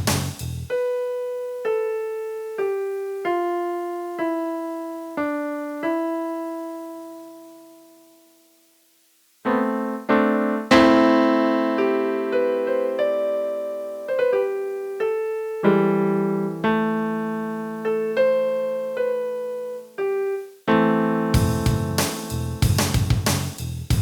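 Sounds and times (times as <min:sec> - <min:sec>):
drum hits: 0:00.0 - 0:00.4, 0:21.4 - 0:24.0
keyboard piano melody: 0:00.7 - 0:08.5, 0:09.4 - 0:22.9.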